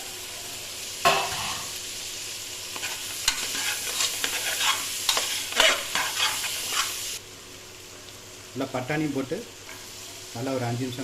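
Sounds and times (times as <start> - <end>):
vegetables sizzling in oil: 0.0 - 11.0
spoon scraping metal pot: 2.8 - 7.0.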